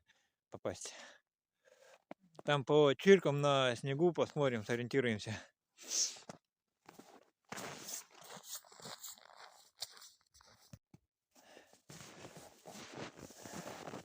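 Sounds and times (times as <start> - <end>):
footsteps crunching in snow: 6.9 - 10.7, 11.8 - 14.0.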